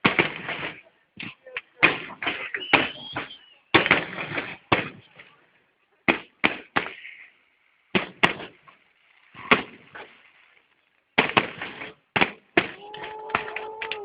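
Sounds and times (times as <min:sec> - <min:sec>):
fireworks bangs: 0:00.0 - 0:05.4, 0:06.0 - 0:14.0
fireworks hiss: 0:06.4 - 0:12.4.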